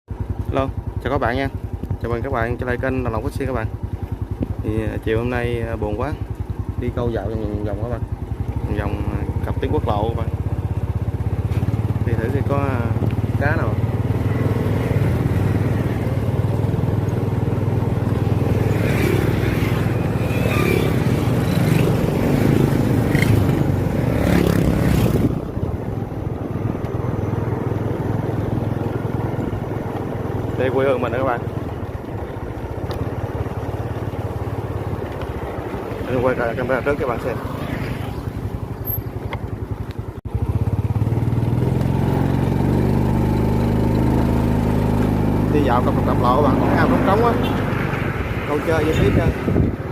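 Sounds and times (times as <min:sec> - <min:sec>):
motorbike engine running: 0:00.1 - 0:49.9
wind and road noise: 0:00.1 - 0:49.9.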